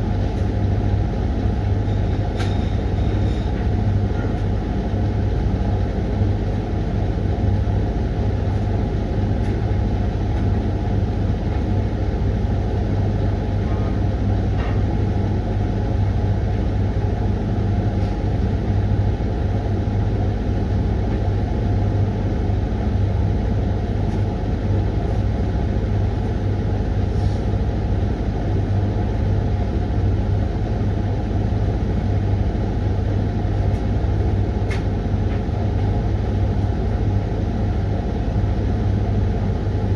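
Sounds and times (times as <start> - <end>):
washing machine motor hum: 0.0 - 39.9.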